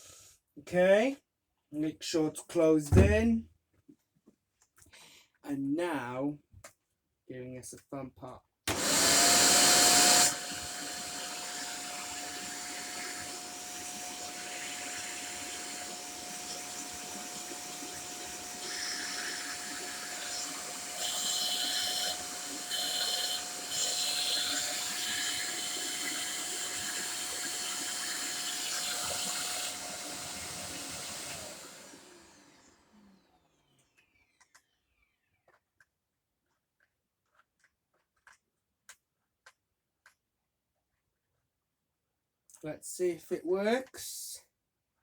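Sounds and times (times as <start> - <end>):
vacuum cleaner running: 8.7 - 34.1.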